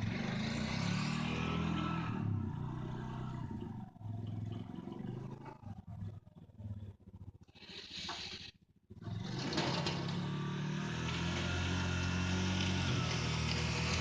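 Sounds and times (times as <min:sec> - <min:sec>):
atv engine running: 0:09.0 - 0:14.0.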